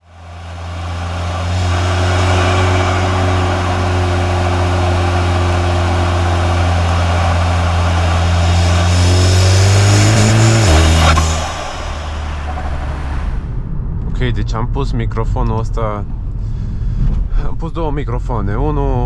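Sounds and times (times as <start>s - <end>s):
car engine droning: 0.0s - 13.6s.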